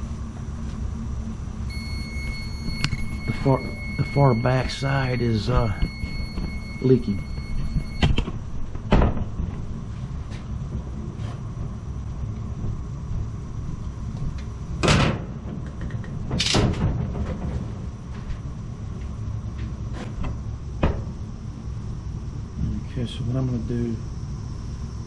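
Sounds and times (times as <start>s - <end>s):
boiler low rumble: 0.0s - 16.3s.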